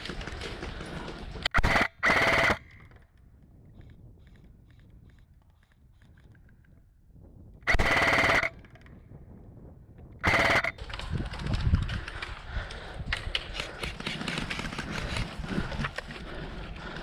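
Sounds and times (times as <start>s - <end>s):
airsoft rifle full-auto bursts: 1.4s - 3.0s, 7.7s - 8.9s, 10.2s - 10.8s.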